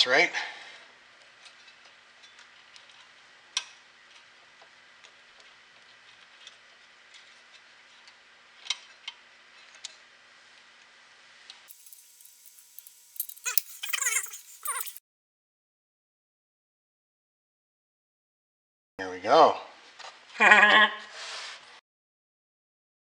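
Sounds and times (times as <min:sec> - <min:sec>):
small metal parts clicking: 0:11.7 - 0:15.0.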